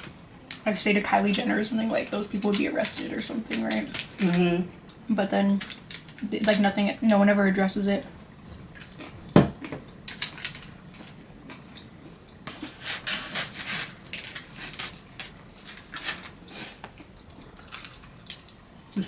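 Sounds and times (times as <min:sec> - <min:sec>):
chewing crunchy pizza crust: 0:08.6 - 0:19.0.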